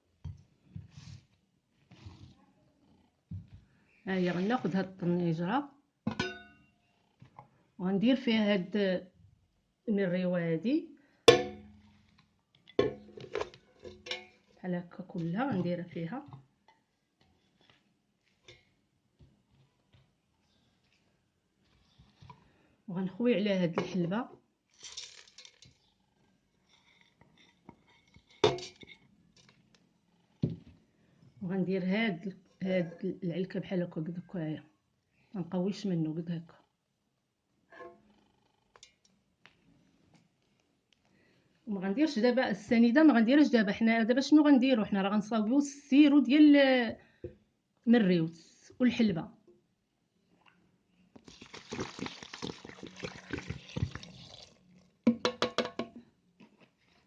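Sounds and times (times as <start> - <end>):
knock on pot: 6.1 - 6.4, 11.3 - 11.8, 55.1 - 56.0
seeds rattling into pot: 24.7 - 25.9, 51.2 - 54.5.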